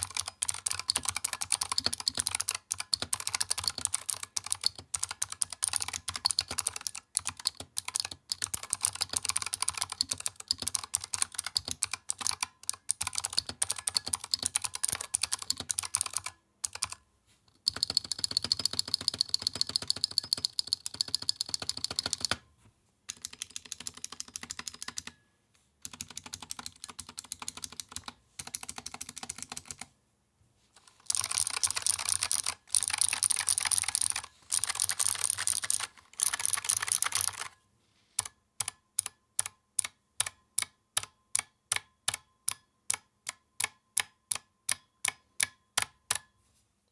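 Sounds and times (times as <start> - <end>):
fast clicky keyboard typing: 0.0 - 17.0, 17.6 - 22.4, 23.1 - 25.2, 25.8 - 29.9, 30.9 - 37.6.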